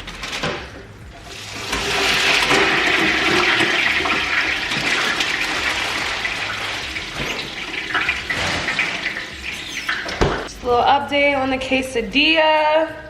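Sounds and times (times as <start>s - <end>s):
fries sizzling in oil: 1.3s - 10.4s.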